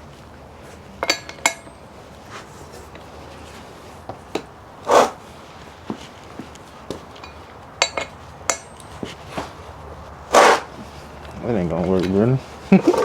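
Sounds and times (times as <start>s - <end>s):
metal tools clicking and knocking: 1.0s - 1.8s, 7.2s - 8.9s.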